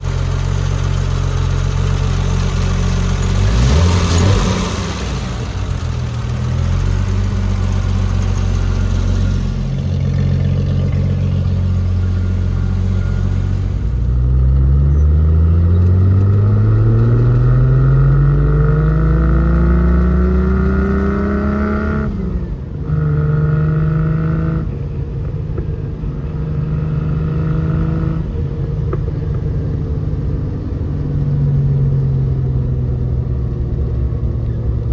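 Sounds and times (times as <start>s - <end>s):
car engine running: 0.0s - 23.4s.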